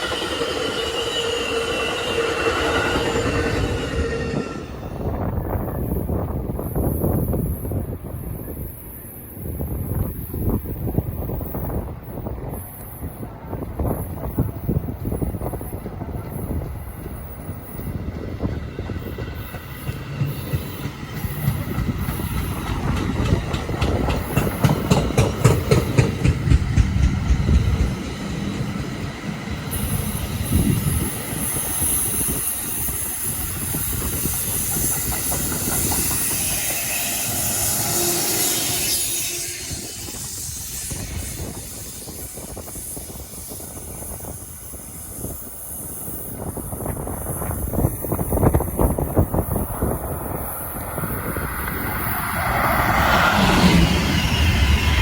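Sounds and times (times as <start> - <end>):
high hiss of passing train cars: 0.0 - 55.0
train wheels clicking over rail joints: 13.6 - 55.0.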